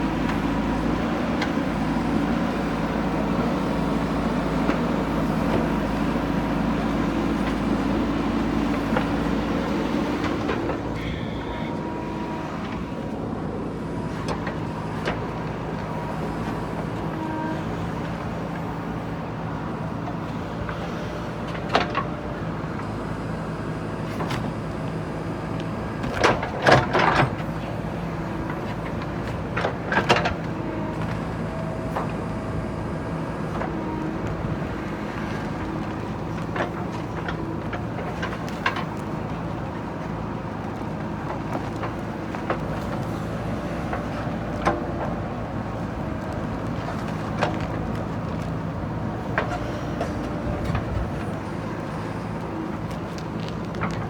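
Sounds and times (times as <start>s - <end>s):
diesel engine running: 0.0s - 54.0s
hydraulic whines: 10.6s - 13.0s.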